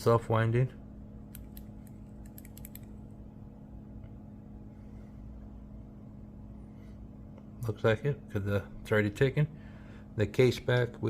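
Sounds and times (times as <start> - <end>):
low steady hum: 0.0 - 11.0
wristwatch clicks: 1.3 - 2.9.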